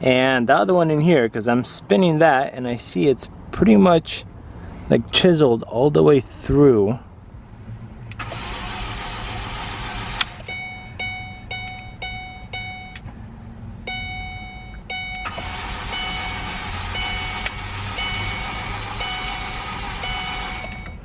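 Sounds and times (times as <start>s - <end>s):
car engine cranking: 7.9s - 21.0s
dashboard warning chime beeping: 10.3s - 13.1s, 13.8s - 21.0s.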